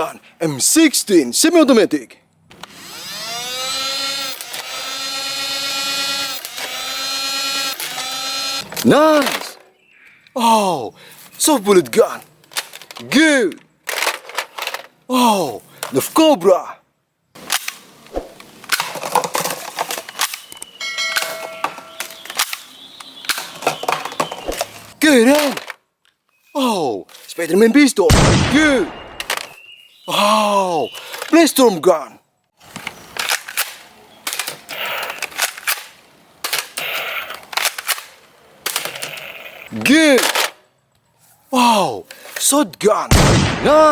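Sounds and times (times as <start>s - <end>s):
short ringing tone: 20.8s - 22.1s
toy blaster gun shots: 28.1s - 29.6s.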